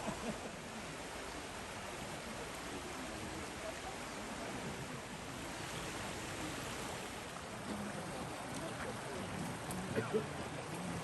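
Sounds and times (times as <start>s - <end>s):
mountain stream rushing: 0.0s - 11.0s
faint voices of passers-by: 2.4s - 11.0s.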